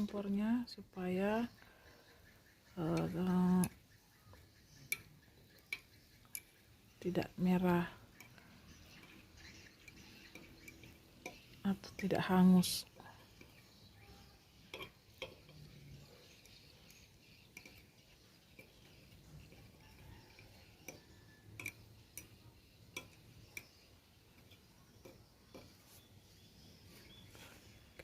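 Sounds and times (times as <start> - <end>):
utensils tapping metal cake mould: 13.2 - 26.0.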